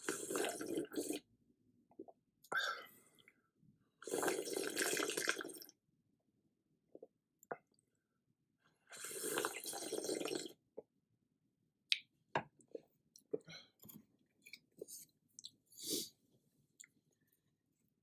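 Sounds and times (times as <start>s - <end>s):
wet slurps of noodle soup: 0.0s - 1.3s, 4.0s - 5.7s, 8.9s - 10.6s.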